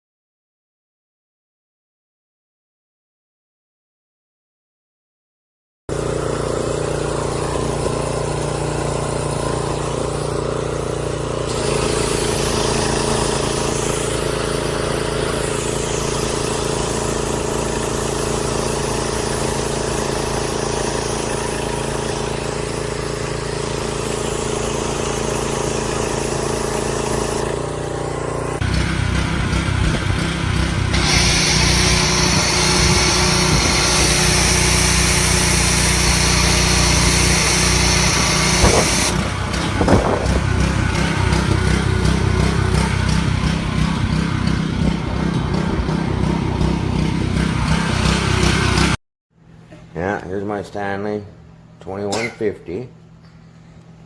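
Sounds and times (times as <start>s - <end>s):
pressure washer motor drone: 5.9s - 49.0s
water spray hissing: 31.0s - 42.2s.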